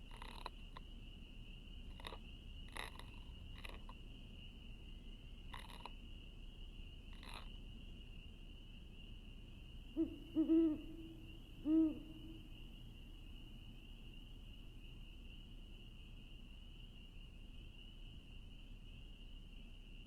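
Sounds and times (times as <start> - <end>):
owl hooting: 0.1 - 0.5, 1.9 - 3.8, 9.9 - 12.7.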